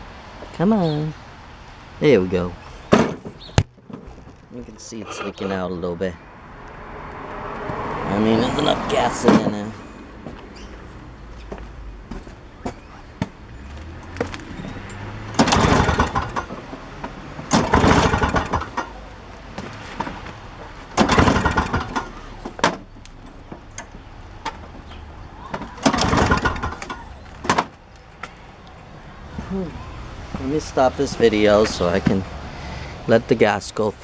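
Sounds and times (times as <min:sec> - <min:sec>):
recoil starter pulls: 0:08.1 - 0:11.0, 0:12.0 - 0:27.8
small engine turning over: 0:14.2 - 0:19.1, 0:20.9 - 0:22.6, 0:25.6 - 0:27.4.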